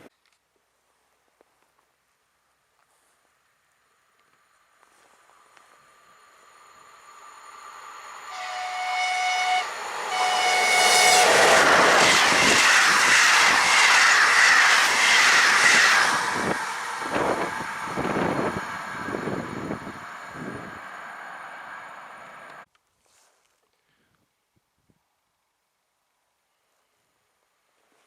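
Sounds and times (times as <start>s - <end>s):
train rushing past: 5.9s - 22.6s
train horn blasts: 8.2s - 12.6s.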